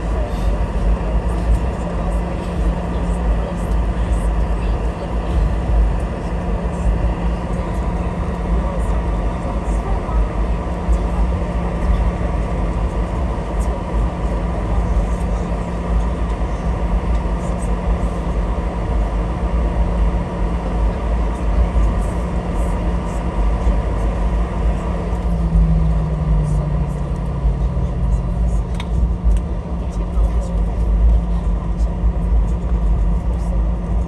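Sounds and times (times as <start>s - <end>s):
aircraft engines low rumble: 0.0s - 34.0s
constant hum: 0.0s - 34.0s.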